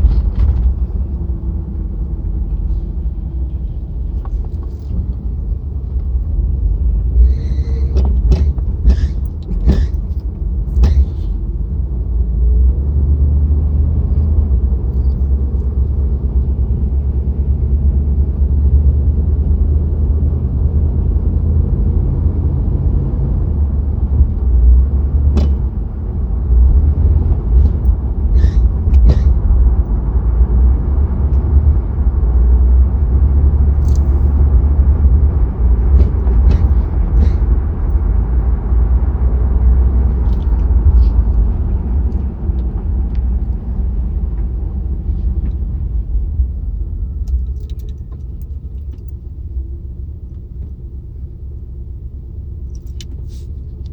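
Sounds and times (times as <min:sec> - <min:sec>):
car engine low rumble: 0:00.0 - 0:53.9.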